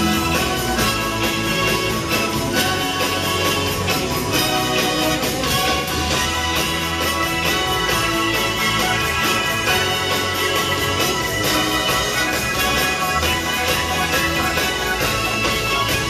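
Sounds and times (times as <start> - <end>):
live band music with steady beat: 0.0 - 16.0.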